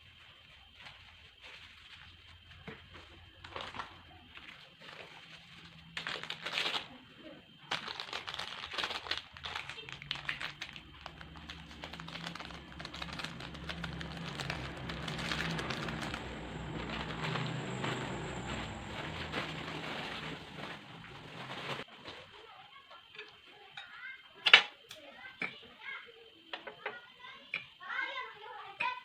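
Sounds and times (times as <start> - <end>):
plastic packaging crinkling: 3.3 - 7.0, 7.6 - 22.3.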